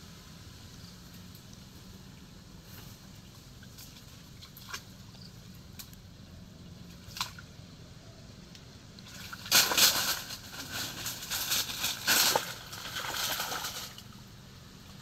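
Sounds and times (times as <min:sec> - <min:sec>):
dog splashing through shallow water: 0:03.6 - 0:05.2, 0:09.1 - 0:14.0.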